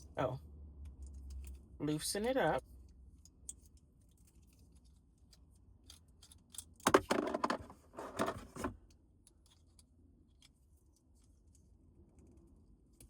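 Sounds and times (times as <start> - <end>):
plastic phone mount clicking and rattling: 5.9 - 8.3.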